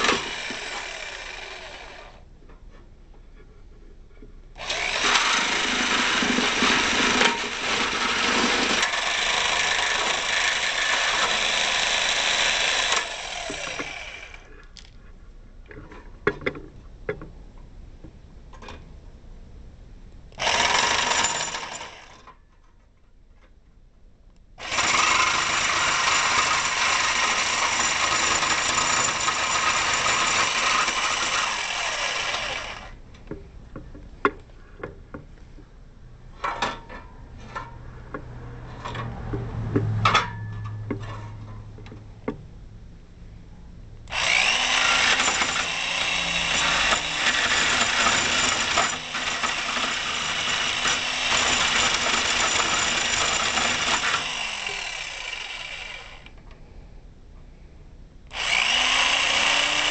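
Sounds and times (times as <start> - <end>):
jigsaw cutting metal: 0.0 - 2.2, 4.6 - 14.5, 20.4 - 22.3, 24.6 - 33.0, 44.1 - 56.3, 58.3 - 59.9.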